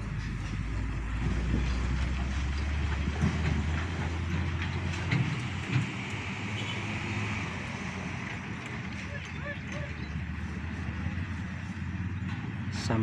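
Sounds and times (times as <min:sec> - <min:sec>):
diesel vehicle engine drone: 0:00.0 - 0:13.0.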